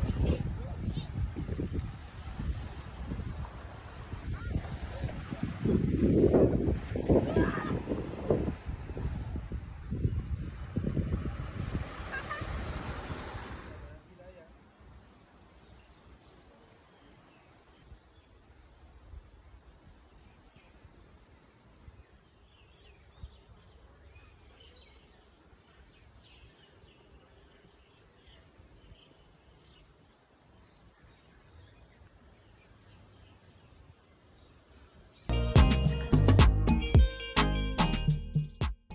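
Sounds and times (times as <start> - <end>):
loud music: 35.3 - 38.9.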